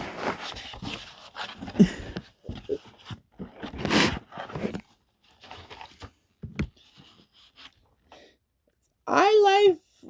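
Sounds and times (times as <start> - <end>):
cardboard box rustling: 0.0 - 7.8.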